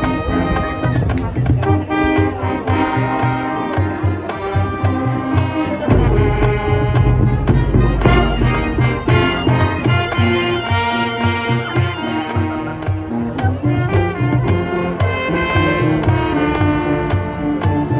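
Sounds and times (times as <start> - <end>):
low drums beating: 0.0 - 17.9
brass chords: 1.7 - 17.9
heavy low bass: 5.7 - 11.7.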